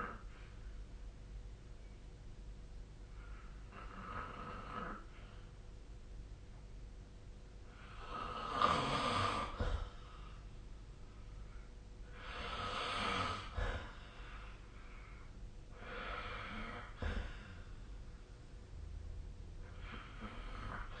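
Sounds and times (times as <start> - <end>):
person snoring: 7.7 - 10.2, 12.1 - 14.1, 15.7 - 17.7, 19.6 - 21.0.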